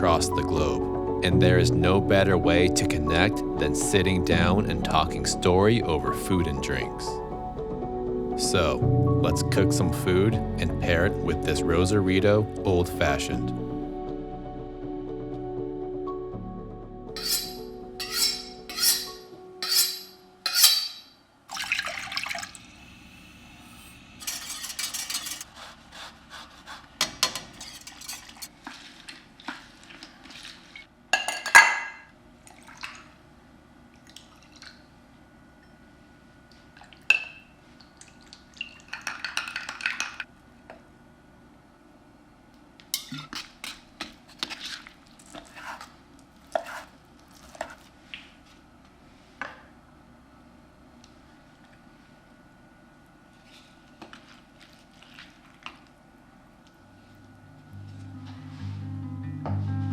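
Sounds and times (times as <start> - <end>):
glass and ice clinking: 17.2 - 21.1, 31.2 - 32.0
utensils knocking on glassware: 17.2 - 21.1
liquid pouring: 21.5 - 22.9.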